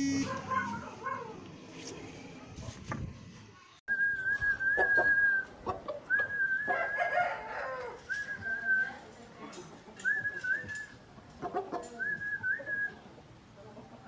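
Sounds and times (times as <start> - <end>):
rooster crowing: 6.8 - 8.0.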